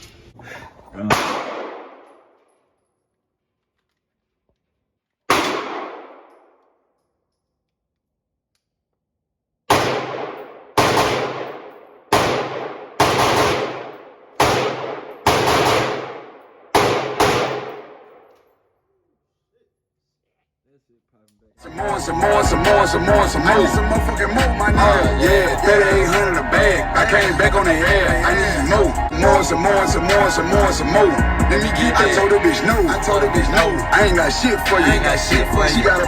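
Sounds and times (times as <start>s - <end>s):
gunshots with long echo: 1.1s - 2.4s, 5.3s - 6.6s, 9.7s - 18.3s.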